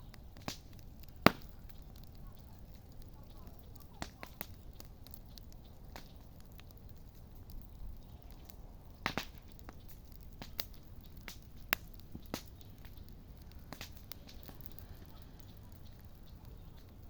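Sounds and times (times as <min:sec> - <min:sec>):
burning wood popping: 0:00.0 - 0:17.0
campfire crackling: 0:00.0 - 0:17.0.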